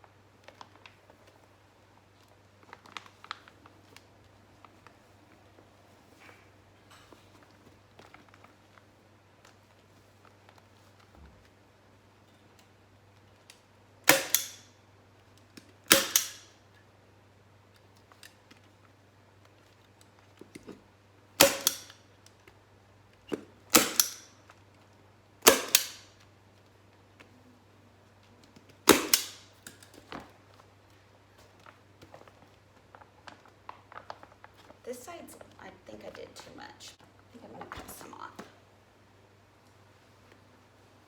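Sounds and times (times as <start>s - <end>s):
staple gun snapping: 14.1s - 14.7s, 15.9s - 16.5s, 21.4s - 22.0s, 23.7s - 24.3s, 25.4s - 26.1s, 28.9s - 29.9s.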